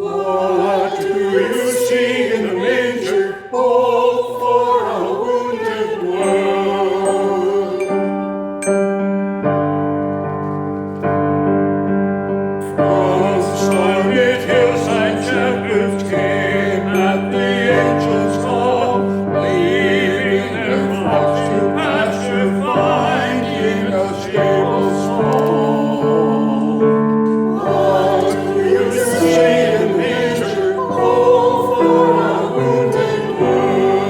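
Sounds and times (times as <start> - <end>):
voices singing with vibrato: 0.0 - 8.6, 12.6 - 34.0
held keyboard chords: 6.4 - 34.0.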